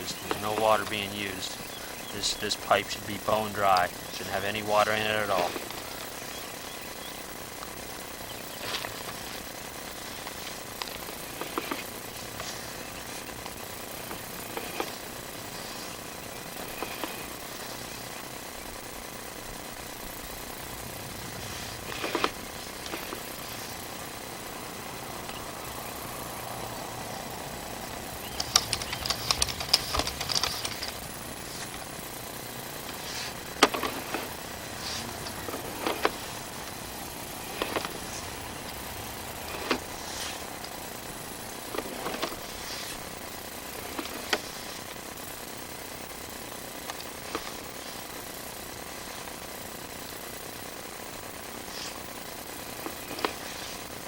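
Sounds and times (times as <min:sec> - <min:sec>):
cable reel rattling and clicking: 0:00.0 - 0:24.6, 0:27.8 - 0:49.2, 0:50.2 - 0:54.0
steady background hiss: 0:00.0 - 0:54.0
rapid clicking: 0:27.8 - 0:54.0.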